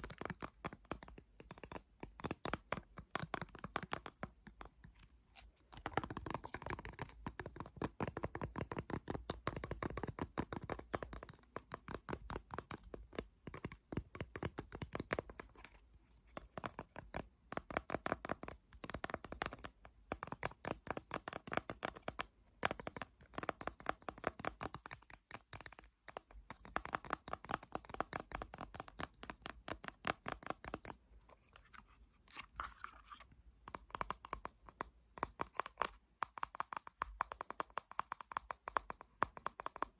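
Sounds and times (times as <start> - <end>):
rapid tapping and scratching: 0.0 - 31.8, 32.6 - 39.9.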